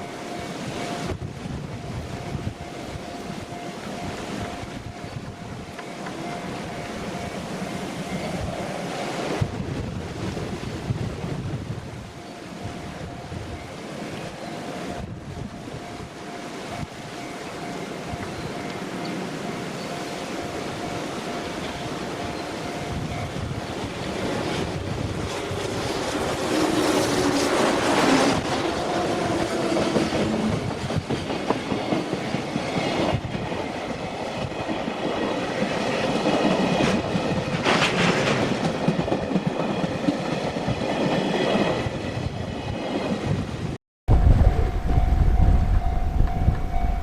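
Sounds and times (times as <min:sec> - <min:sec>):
freight train wheels clattering: 0:22.6 - 0:43.2.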